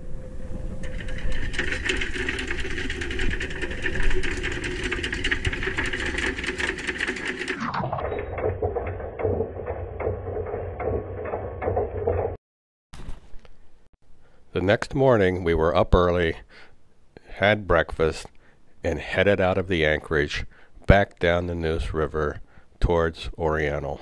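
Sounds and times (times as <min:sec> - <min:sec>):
motor running with rapid rattle: 0:00.6 - 0:12.4.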